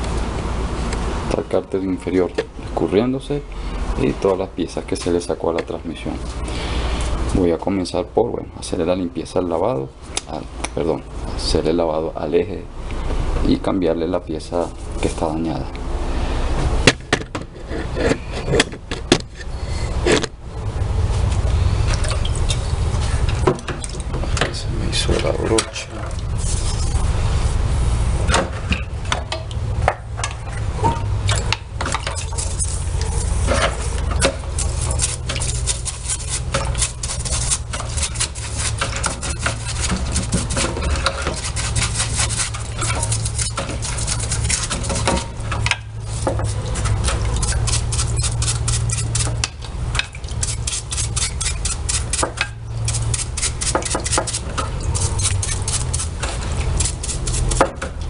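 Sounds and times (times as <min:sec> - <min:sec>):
low steady hum: 0:00.0 - 0:58.0
brush scrubbing metal: 0:14.4 - 0:15.4, 0:25.0 - 0:27.0, 0:31.4 - 0:57.7.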